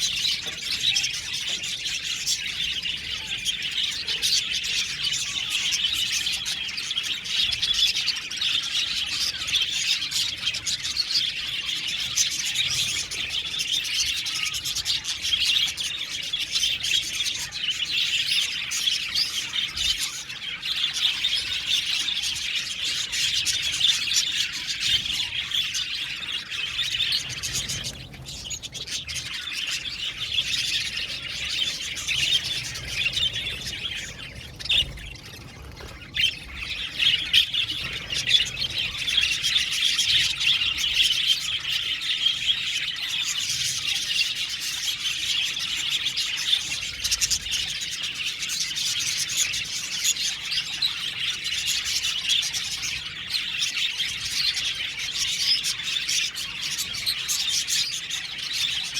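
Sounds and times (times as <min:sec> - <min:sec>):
budgerigars chattering and chirping: 0:00.0 - 0:58.9.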